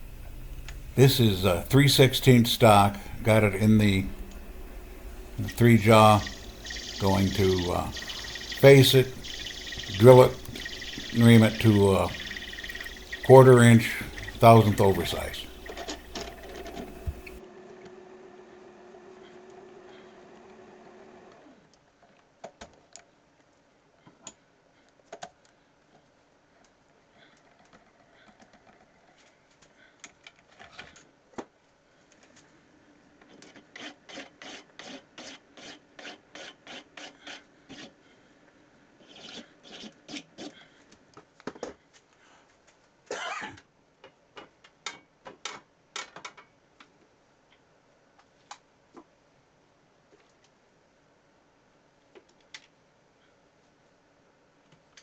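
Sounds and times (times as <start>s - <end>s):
lathe hum: 0.0s - 17.4s.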